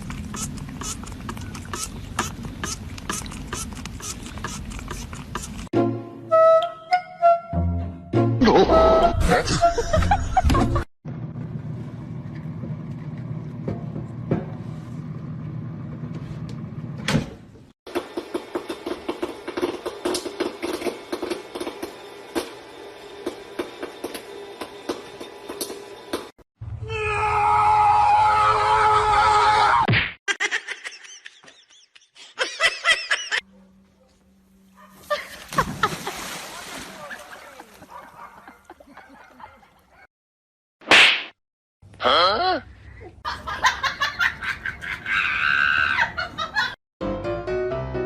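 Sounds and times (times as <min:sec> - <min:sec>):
person laughing: 0:08.4 - 0:10.9, 0:30.3 - 0:33.4, 0:35.0 - 0:36.4, 0:42.1 - 0:46.8
low mechanical hum: 0:11.1 - 0:26.3, 0:33.5 - 0:35.8.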